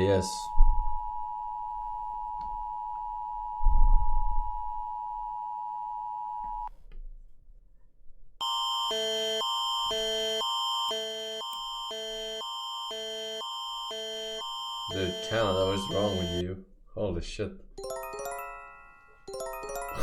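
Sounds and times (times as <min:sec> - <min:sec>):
emergency alert tone: 0:08.4 - 0:16.4
alternating electronic alert chords: 0:08.9 - 0:16.4.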